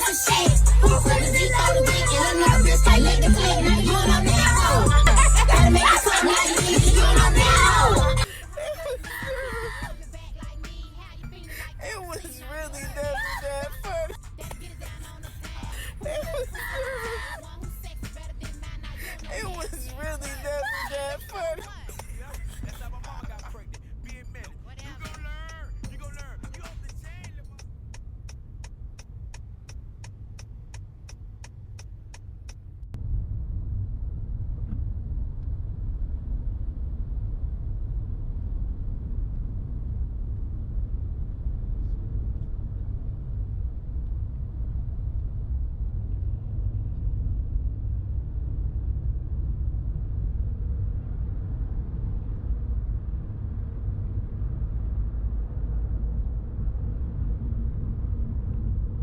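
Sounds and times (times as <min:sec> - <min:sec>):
regular ticking: 0:00.0 - 0:32.9
low rumble of moving car: 0:00.0 - 0:59.0.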